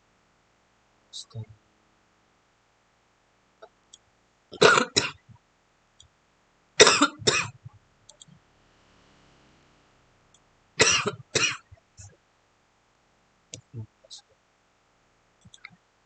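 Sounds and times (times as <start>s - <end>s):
person coughing: 4.6s - 5.2s, 6.8s - 7.6s, 10.8s - 11.7s.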